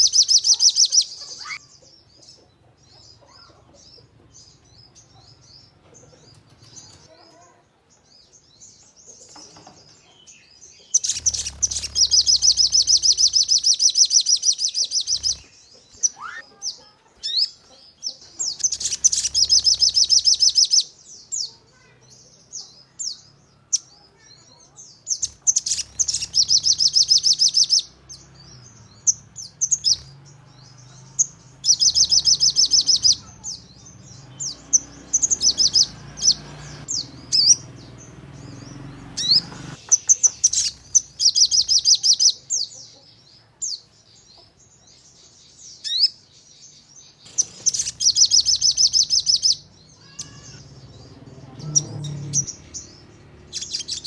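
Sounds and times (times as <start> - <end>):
bird trilling: 0.0 - 1.7, 10.9 - 21.5, 25.1 - 42.5, 47.2 - 54.0
bird chirps and whistles: 18.6 - 20.9, 25.2 - 27.9, 47.3 - 49.6.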